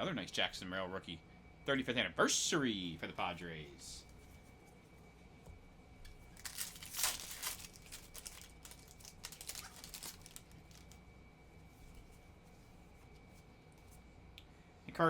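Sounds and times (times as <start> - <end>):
foil wrapper crinkling: 6.2 - 11.0.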